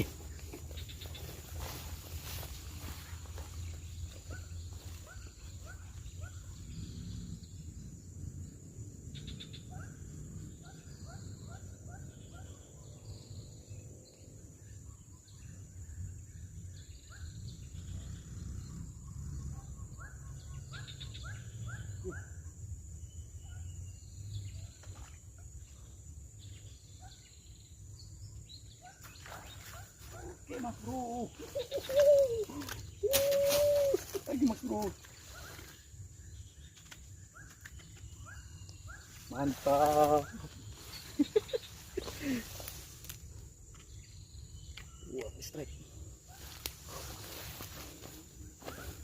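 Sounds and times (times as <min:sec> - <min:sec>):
insect drone: 0:00.0 - 0:49.0
bird chirping: 0:10.6 - 0:49.0.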